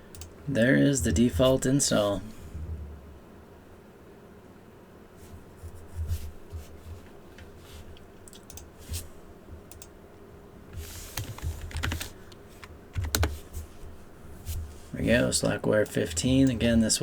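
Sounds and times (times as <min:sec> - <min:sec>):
keyboard keystrokes: 0:10.8 - 0:13.4.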